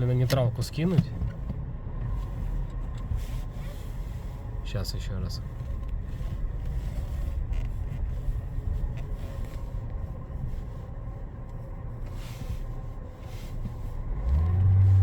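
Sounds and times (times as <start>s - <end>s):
car engine low rumble: 0.0s - 15.0s.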